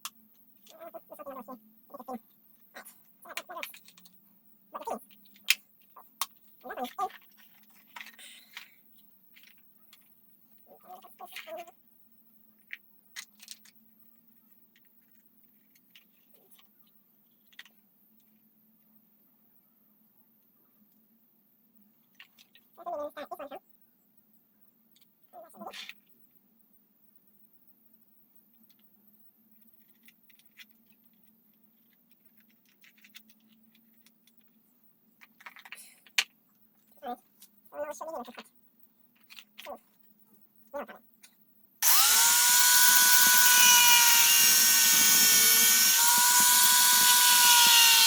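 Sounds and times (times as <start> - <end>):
small tools clicking and rattling: 41.8 - 48.0.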